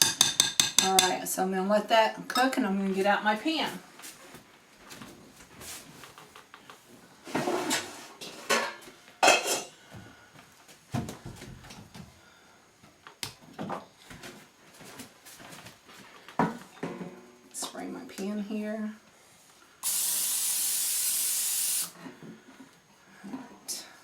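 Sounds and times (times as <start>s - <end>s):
metal pans clanking: 7.3s - 9.7s.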